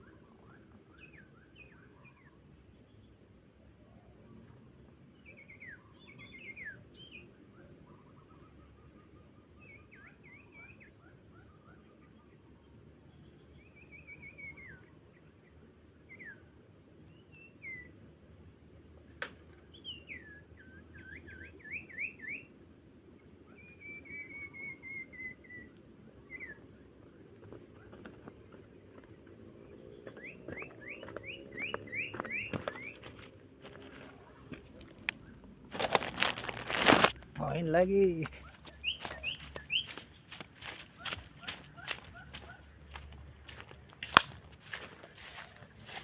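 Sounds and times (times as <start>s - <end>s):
small birds whistling falling notes: 30.0s - 33.1s, 38.4s - 40.2s
bird chattering: 37.4s - 40.0s.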